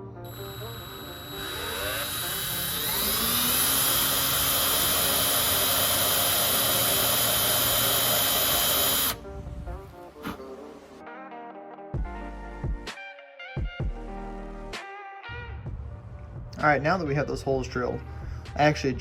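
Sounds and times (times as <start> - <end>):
electric drill whining: 0.0 - 9.2.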